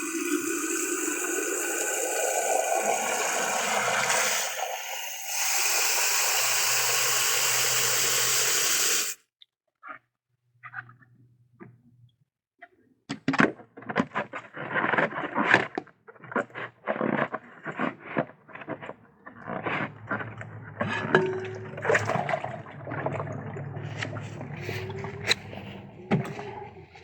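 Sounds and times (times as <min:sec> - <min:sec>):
pigeons cooing: 0:23.4 - 0:27.0.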